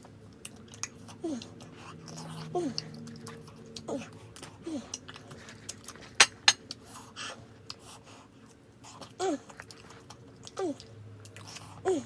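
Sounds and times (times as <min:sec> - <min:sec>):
handling and eating sounds: 0:04.4 - 0:07.0
tableware clinking: 0:06.2 - 0:06.6.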